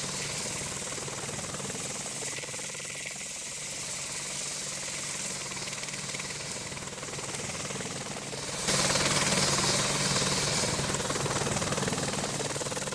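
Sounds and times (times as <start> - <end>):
helicopter rotor chop: 0.0 - 12.9.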